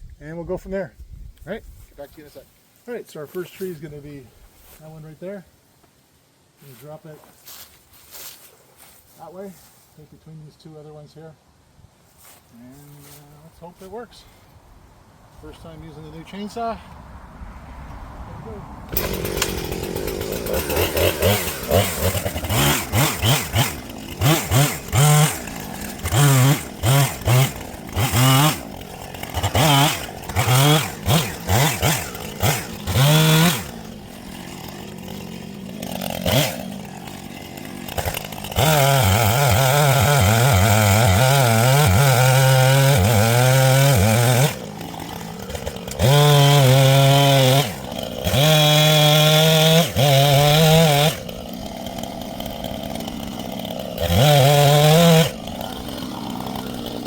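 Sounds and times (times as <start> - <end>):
chainsaw revving and cutting wood: 18.5 - 57.0.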